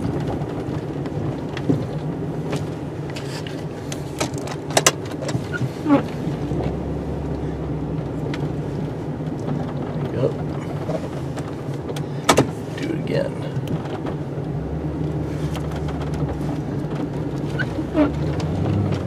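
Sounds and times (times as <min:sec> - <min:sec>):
truck engine running: 0:00.0 - 0:19.0
sharp knocks and clicks: 0:10.8 - 0:12.6.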